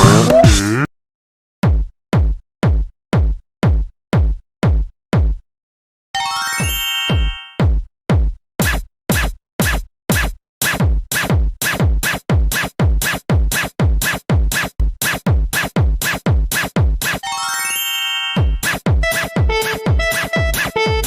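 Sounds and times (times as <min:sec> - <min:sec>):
drum machine kick beat: 0:00.0 - 0:00.8, 0:01.6 - 0:05.4, 0:06.7 - 0:17.2, 0:18.4 - 0:21.0.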